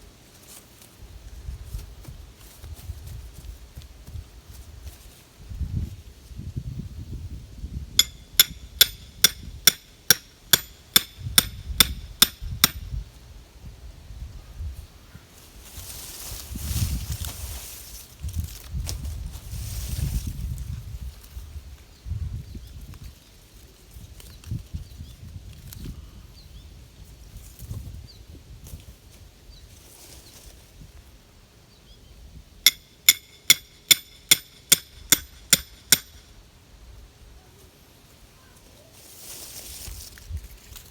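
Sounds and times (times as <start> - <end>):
hammer driving a stake: 8.0 - 12.9, 32.7 - 36.2.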